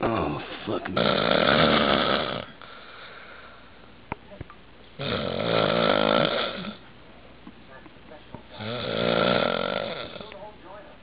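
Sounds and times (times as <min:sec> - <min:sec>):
man snoring: 0:00.0 - 0:02.6, 0:05.0 - 0:06.8, 0:08.6 - 0:10.3.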